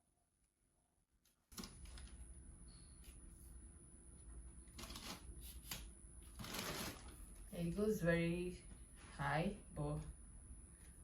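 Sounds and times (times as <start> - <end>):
low steady hum: 1.5 - 11.0.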